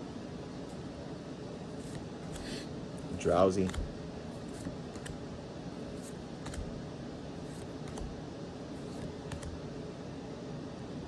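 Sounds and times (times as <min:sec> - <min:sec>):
cards clicking and tapping: 0:01.9 - 0:02.6, 0:03.6 - 0:05.3, 0:06.0 - 0:06.8, 0:07.5 - 0:08.2, 0:08.8 - 0:09.6.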